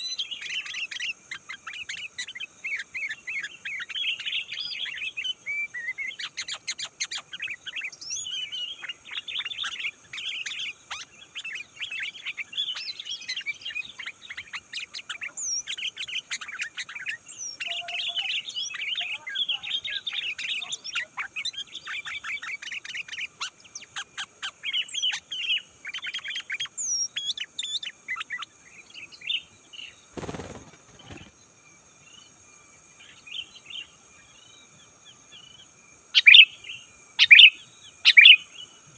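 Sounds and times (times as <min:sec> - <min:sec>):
steady high hiss: 0:00.0 - 0:38.9
bird chattering: 0:30.2 - 0:31.3.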